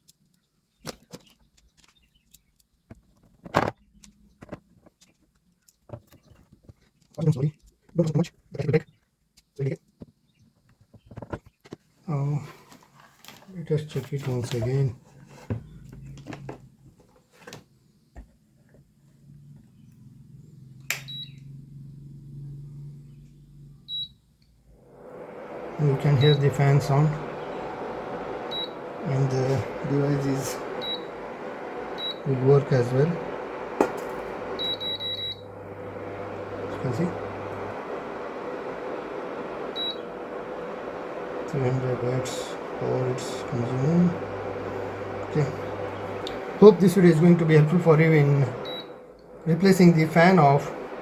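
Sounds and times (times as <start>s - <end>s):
cooling fan humming: 19.2s - 24.1s, 24.7s - 51.0s.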